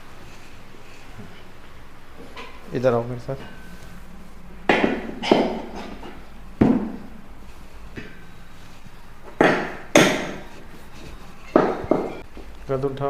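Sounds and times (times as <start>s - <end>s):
sharp knocks on treatment table: 4.7s - 6.0s.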